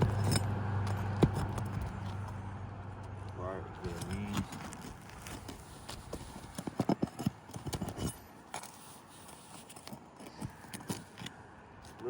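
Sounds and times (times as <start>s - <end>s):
nails being pried out: 0.0s - 2.3s, 6.0s - 8.8s.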